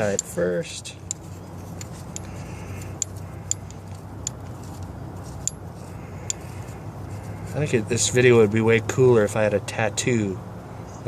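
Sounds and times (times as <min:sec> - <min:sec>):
light metallic clicks and clinks: 0:00.0 - 0:00.4, 0:01.0 - 0:06.6
steady low hum: 0:00.0 - 0:09.4.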